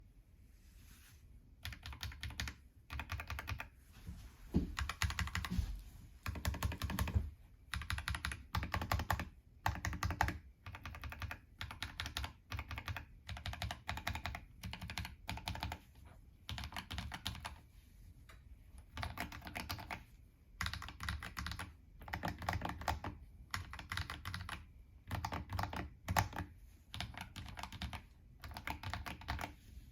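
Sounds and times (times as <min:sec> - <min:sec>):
mechanical keyboard typing: 0:01.6 - 0:03.7, 0:04.8 - 0:05.5, 0:06.2 - 0:07.1, 0:07.7 - 0:15.8, 0:16.5 - 0:17.6, 0:18.8 - 0:29.6.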